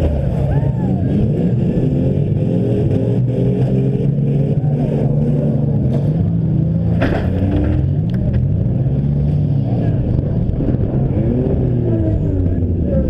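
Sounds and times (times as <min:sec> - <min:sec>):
car engines revving: 0:00.0 - 0:13.0
car crash: 0:06.9 - 0:08.0.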